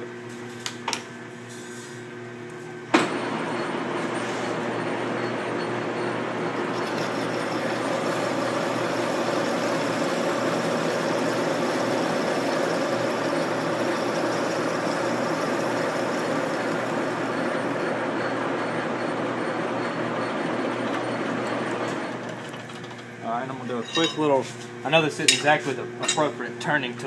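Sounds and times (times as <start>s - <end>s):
lathe running: 5.7s - 24.3s.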